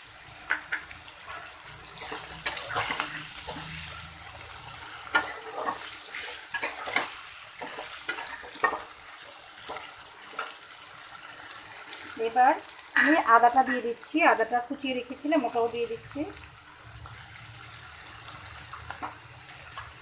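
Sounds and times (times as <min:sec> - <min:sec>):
vegetables sizzling in oil: 0:00.0 - 0:20.0
spatula knocking and scraping pan: 0:05.0 - 0:08.9.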